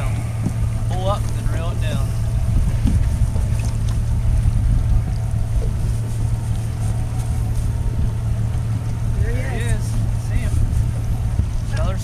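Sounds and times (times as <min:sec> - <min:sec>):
boat engine idling: 0:00.0 - 0:12.0
water noise: 0:00.0 - 0:12.0
wind: 0:00.0 - 0:12.0.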